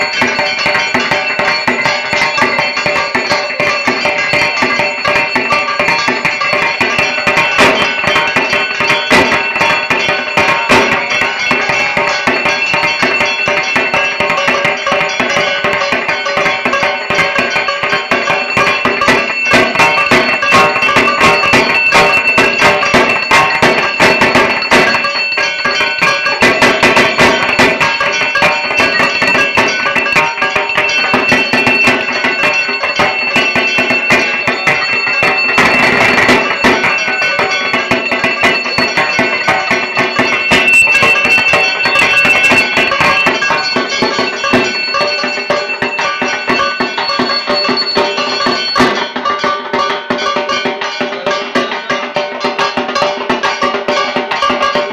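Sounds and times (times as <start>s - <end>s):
high ringing tone: 0.0s - 49.6s
barrel drum fast rhythm: 0.0s - 54.9s.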